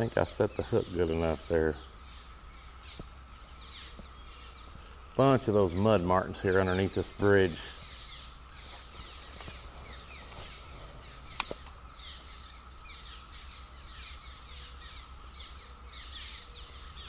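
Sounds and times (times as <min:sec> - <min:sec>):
swallows chattering: 0:00.0 - 0:17.0
sharp click: 0:11.3 - 0:11.8.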